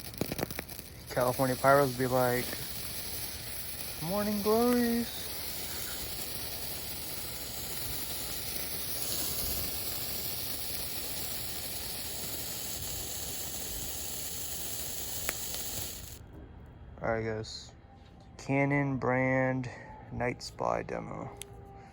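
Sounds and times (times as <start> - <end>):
sparklers hissing: 0.0 - 16.2.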